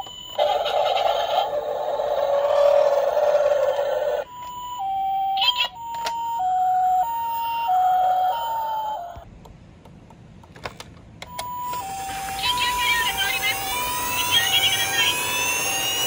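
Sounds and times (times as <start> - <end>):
two-tone hi-lo siren: 0.0 - 9.2, 11.3 - 16.0
clicks: 9.1 - 11.9.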